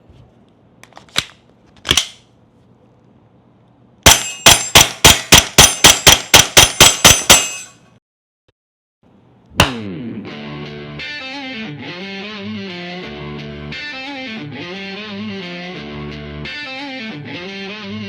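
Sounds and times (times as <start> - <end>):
airsoft pistol shots: 4.0 - 7.7, 9.6 - 9.9
sharp metallic clacks: 4.0 - 7.8.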